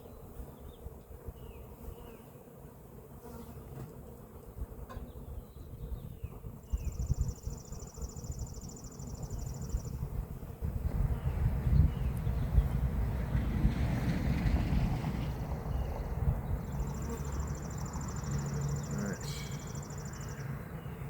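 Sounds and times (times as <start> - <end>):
low rumble on microphone: 9.9 - 17.0
bees buzzing: 15.3 - 21.0.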